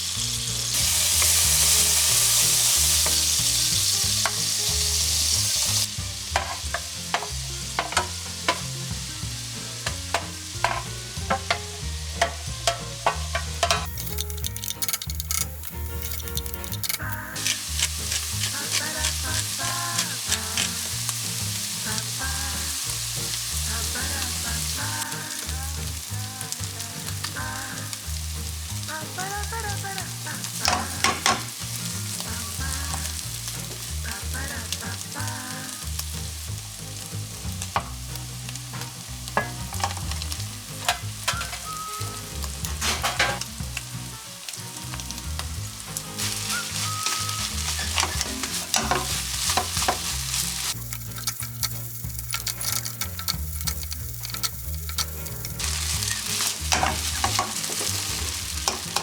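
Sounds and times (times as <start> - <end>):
rice sizzling in a hot pan: 0.0 - 59.0
spatula scraping and tapping a pan: 0.8 - 5.7, 6.3 - 20.9, 30.6 - 31.7, 37.4 - 38.1, 38.8 - 43.9, 44.9 - 59.0.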